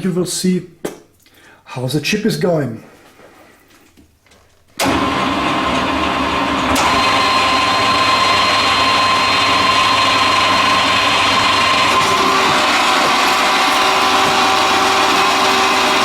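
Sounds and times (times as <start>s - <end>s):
lathe running with whine: 4.8s - 16.0s.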